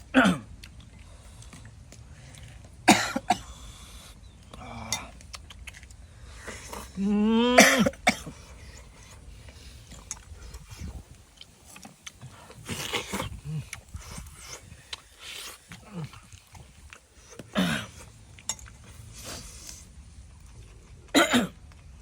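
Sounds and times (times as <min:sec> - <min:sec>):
person coughing: 0:00.1 - 0:00.5, 0:02.9 - 0:03.5, 0:07.4 - 0:08.3, 0:17.6 - 0:18.0, 0:21.1 - 0:21.6.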